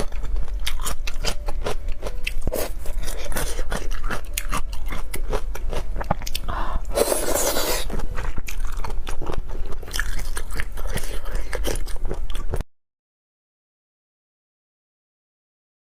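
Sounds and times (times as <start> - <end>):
chewing and crunching: 0.0 - 12.6.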